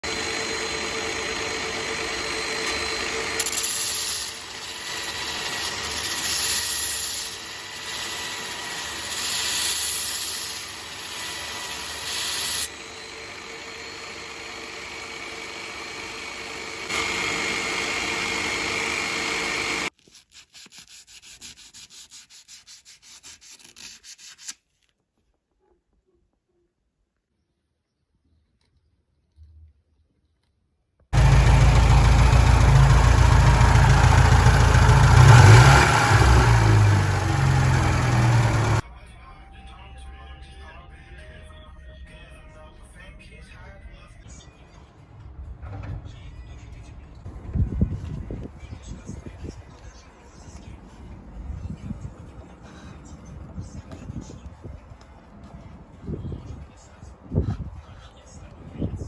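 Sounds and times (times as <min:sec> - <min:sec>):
abrasive grinding on metal: 0:31.2 - 0:38.8.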